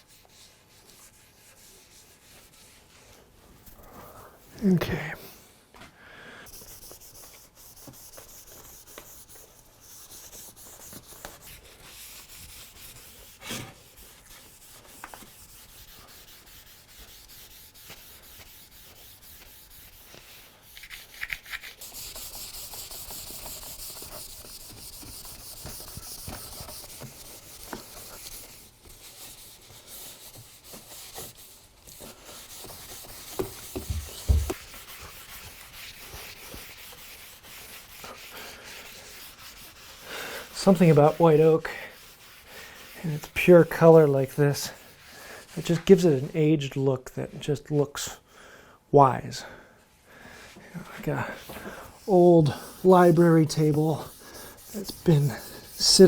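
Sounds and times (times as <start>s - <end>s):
hand rubbing over wood: 6.5s - 46.3s, 50.8s - 56.0s
knock: 33.8s - 34.6s.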